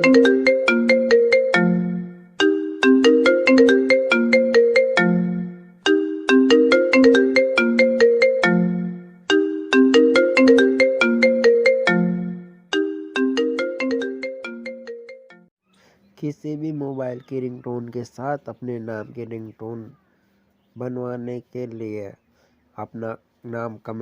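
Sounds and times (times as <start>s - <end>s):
phone ringtone melody: 0.0s - 15.5s.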